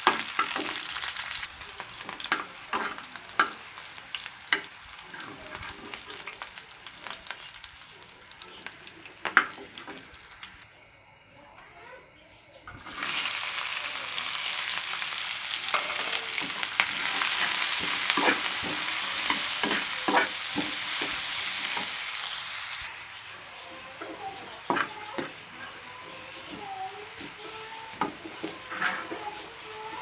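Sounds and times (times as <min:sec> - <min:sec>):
spoon clinking and scraping pan: 0:00.0 - 0:01.3, 0:01.9 - 0:06.6, 0:14.8 - 0:22.2, 0:23.5 - 0:30.0
okra sizzling in hot oil: 0:00.0 - 0:10.7, 0:12.8 - 0:30.0.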